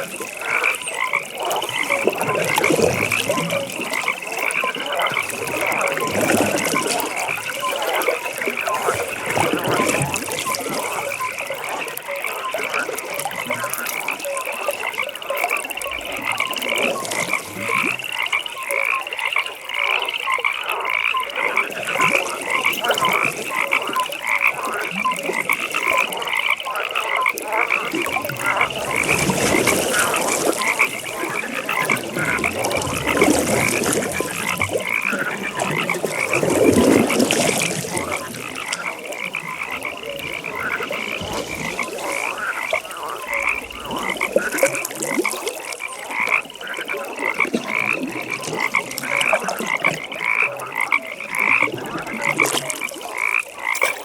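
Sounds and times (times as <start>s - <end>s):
frogs croaking in chorus: 0.0s - 54.0s.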